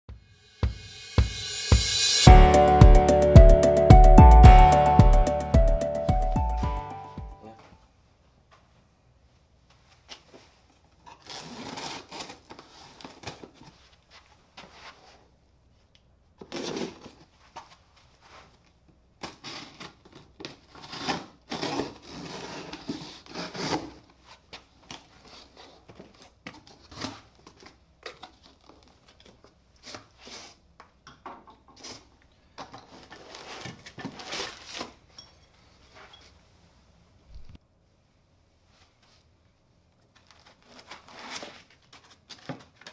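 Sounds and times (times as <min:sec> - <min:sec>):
packaging rustling and scraping: 0:32.8 - 0:35.0, 0:40.1 - 0:42.9.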